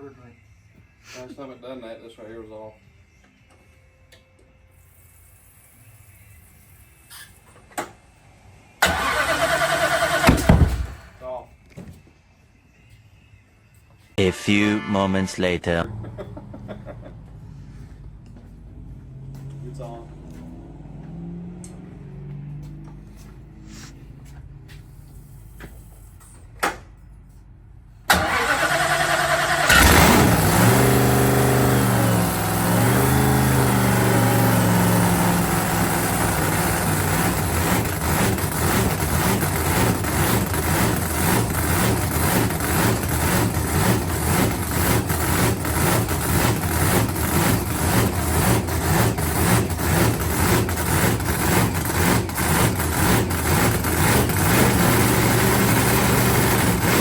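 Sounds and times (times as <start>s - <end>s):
drag racing engine revving and idling: 16.0s - 25.7s, 28.3s - 57.0s.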